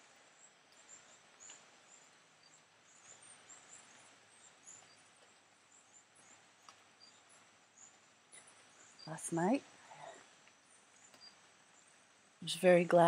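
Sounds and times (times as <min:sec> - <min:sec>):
quiet hiss: 0:00.0 - 0:13.0
soft high-pitched chirps: 0:00.1 - 0:12.0.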